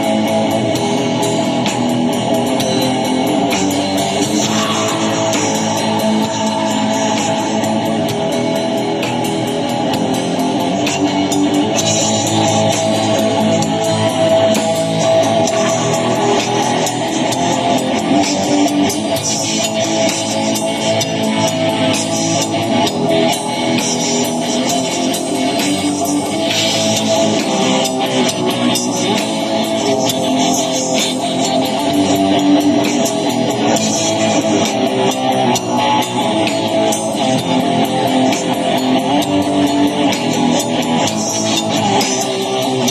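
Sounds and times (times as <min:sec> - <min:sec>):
drum kit: 0:00.0 - 0:42.9
electric guitars: 0:00.0 - 0:42.9.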